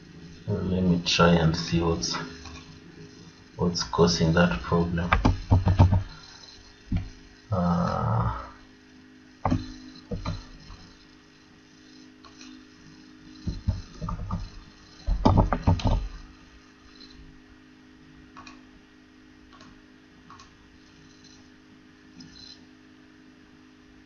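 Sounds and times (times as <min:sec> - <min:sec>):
steady low hum: 0:00.0 - 0:24.0
computer clicks and knocks: 0:05.0 - 0:06.2, 0:09.5 - 0:10.5, 0:13.4 - 0:16.2.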